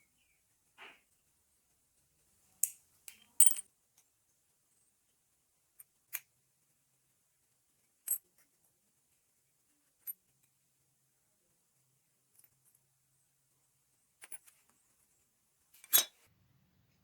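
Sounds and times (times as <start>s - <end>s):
small metal parts clinking: 2.6s - 3.6s.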